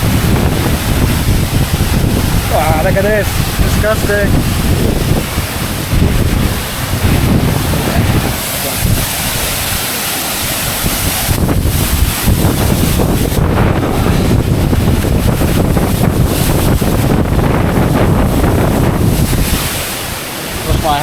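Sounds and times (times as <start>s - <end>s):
waterfall roaring: 0.0s - 21.0s
wind buffeting microphone: 0.0s - 21.0s.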